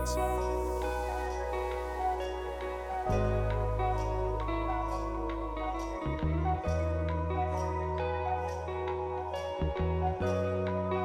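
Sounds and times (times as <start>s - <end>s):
soft instrumental music: 0.0s - 11.0s.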